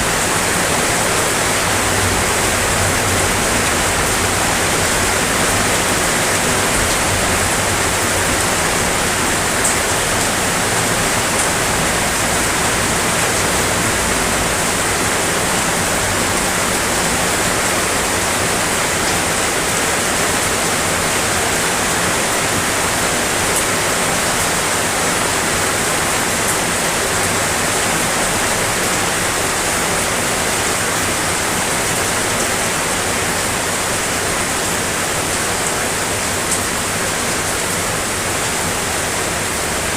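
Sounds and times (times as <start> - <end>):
heavy rain hissing: 0.0 - 39.9.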